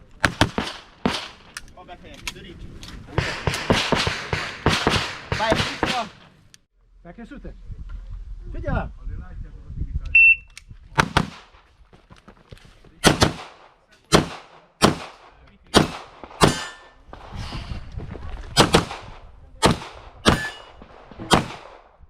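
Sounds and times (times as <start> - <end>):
handgun shots with echo: 15.8 - 16.9, 18.6 - 21.8.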